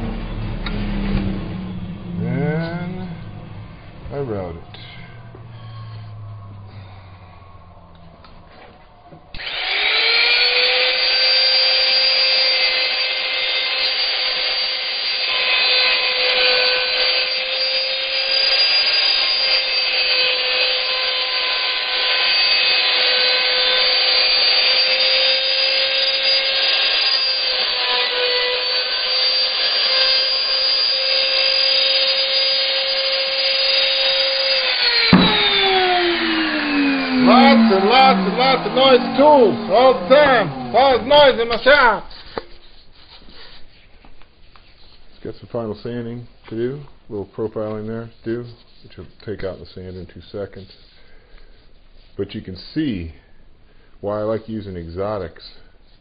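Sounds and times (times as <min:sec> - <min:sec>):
power sander whining: 0:00.0 - 0:43.5.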